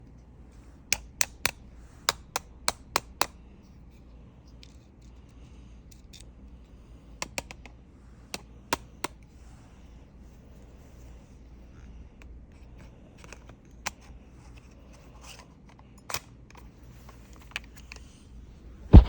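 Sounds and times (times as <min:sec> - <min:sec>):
sharp plastic clicks and taps: 0:00.9 - 0:03.4.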